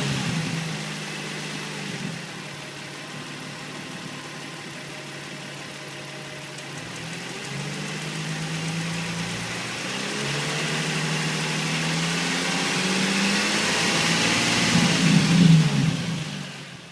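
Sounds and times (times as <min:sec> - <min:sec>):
car engine idling: 0:00.0 - 0:13.0
engine ticking: 0:02.3 - 0:09.9.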